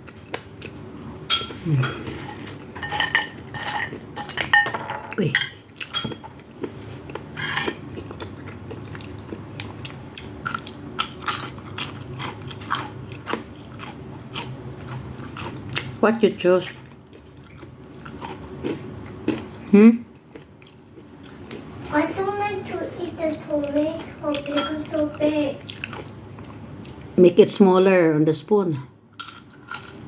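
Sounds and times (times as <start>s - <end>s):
biting and chewing: 5.8s - 16.0s, 16.8s - 21.7s.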